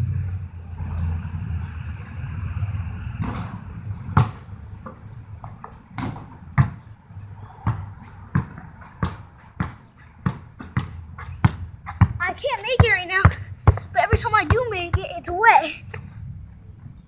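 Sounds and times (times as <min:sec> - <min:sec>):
low rumble of passing vehicle: 0:00.0 - 0:17.0
basketball bouncing on hard ground: 0:03.2 - 0:16.1.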